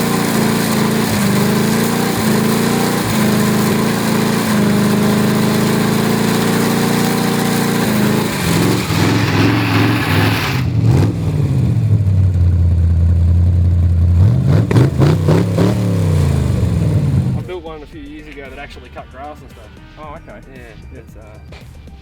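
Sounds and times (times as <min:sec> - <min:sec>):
engine revving: 0:00.0 - 0:17.6.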